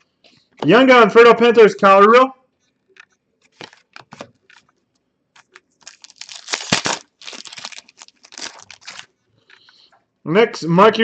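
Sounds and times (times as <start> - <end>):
foil wrapper crinkling and tearing: 3.5 - 4.7, 5.4 - 9.1.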